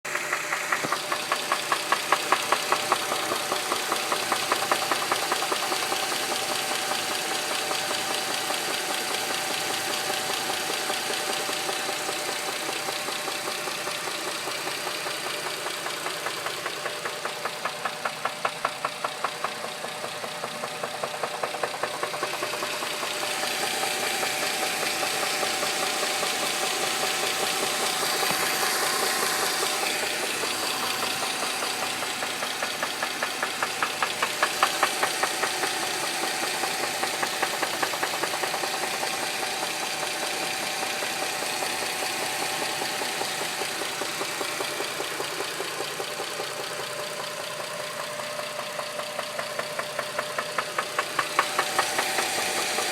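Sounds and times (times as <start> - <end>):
car engine knocking: 0.1 - 52.9.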